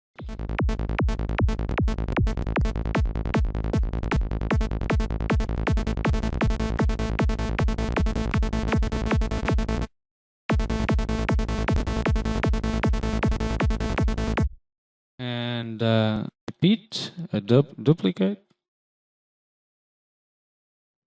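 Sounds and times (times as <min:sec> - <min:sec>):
electronic kick and bass loop: 0:00.2 - 0:09.9, 0:10.5 - 0:14.6.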